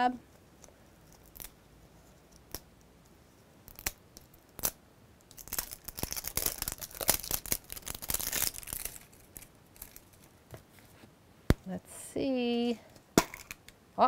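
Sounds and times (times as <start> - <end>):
plastic packaging crinkling and tearing: 1.0 - 1.6, 3.7 - 10.4.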